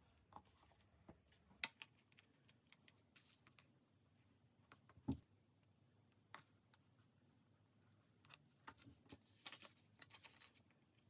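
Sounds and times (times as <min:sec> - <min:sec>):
paper clicks and rustles: 0:08.3 - 0:10.8.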